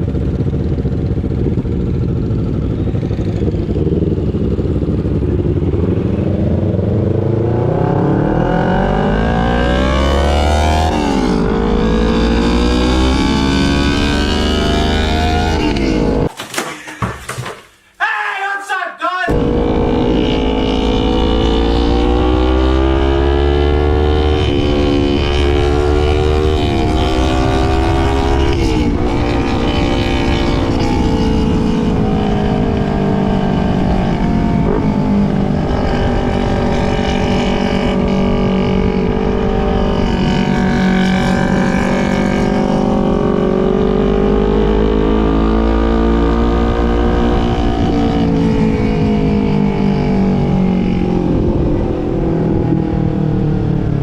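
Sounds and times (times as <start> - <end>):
motorcycle engine revving: 0.0 - 16.3, 19.3 - 54.0.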